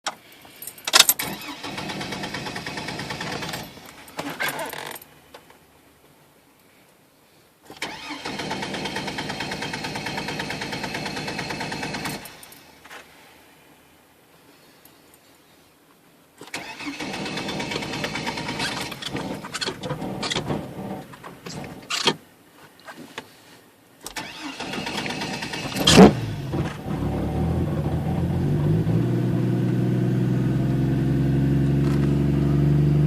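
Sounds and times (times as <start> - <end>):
starter cranking engine: 0.9 - 4.4, 7.8 - 12.6, 16.5 - 21.9, 24.1 - 26.9.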